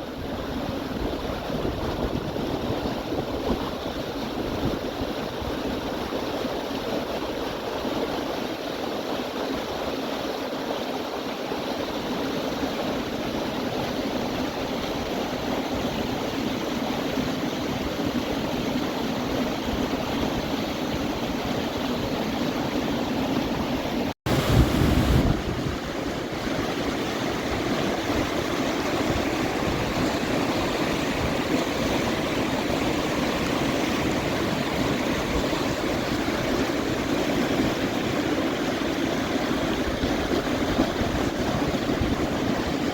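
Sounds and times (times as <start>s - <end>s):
river rapids rushing: 22.7s - 42.9s.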